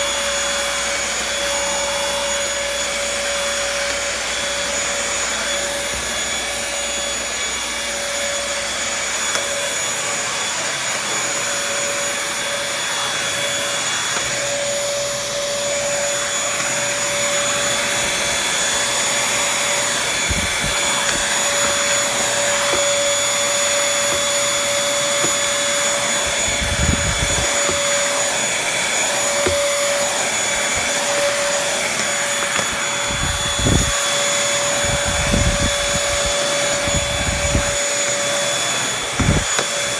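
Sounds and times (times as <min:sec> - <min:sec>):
vacuum cleaner whine: 0:00.0 - 0:39.9.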